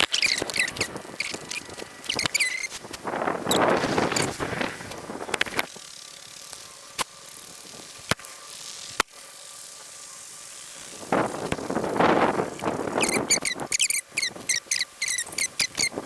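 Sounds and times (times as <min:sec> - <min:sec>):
toy fishing reel clicking: 0:00.0 - 0:02.8, 0:05.3 - 0:09.8, 0:12.9 - 0:15.9.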